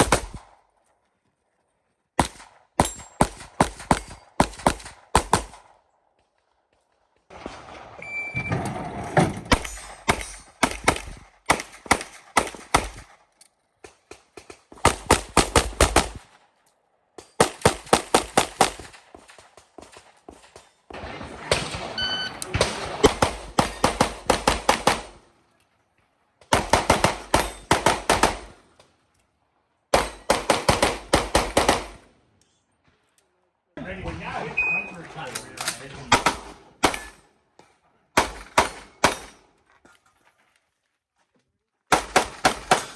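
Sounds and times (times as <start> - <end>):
rapid pistol shots: 0.0 - 0.6, 2.2 - 5.8, 9.5 - 13.2, 14.0 - 16.4, 17.4 - 25.2, 26.5 - 28.6, 29.9 - 32.1, 36.1 - 37.2, 38.2 - 39.4, 41.9 - 42.9
short high beep: 22.0 - 22.4, 34.5 - 35.0.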